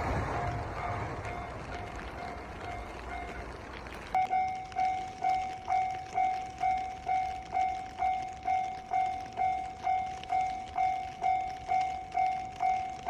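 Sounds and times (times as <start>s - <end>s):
level crossing alarm bell: 4.2s - 13.0s.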